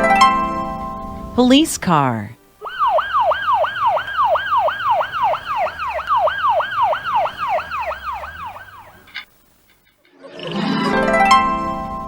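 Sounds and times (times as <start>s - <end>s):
police siren yelping: 2.6s - 9.3s.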